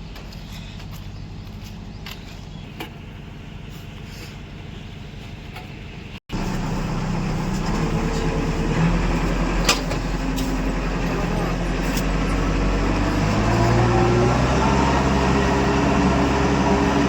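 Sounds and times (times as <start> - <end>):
heavy diesel engine running: 6.3 - 17.0.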